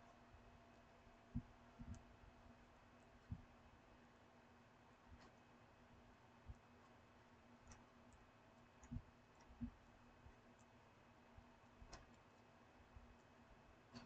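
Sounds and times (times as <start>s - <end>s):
faint clicks and soft knocks: 0.0s - 4.1s, 4.9s - 14.0s
faint steady hum: 0.0s - 14.0s.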